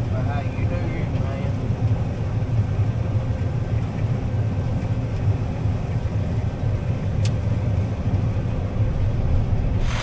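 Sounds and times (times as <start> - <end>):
faint click: 7.2 - 7.4.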